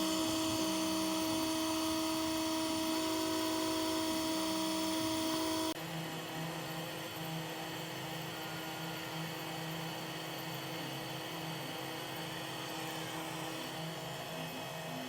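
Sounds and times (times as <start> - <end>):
lower hum starting and stopping: 0.0 - 5.8
machine hum and hiss: 0.0 - 15.0.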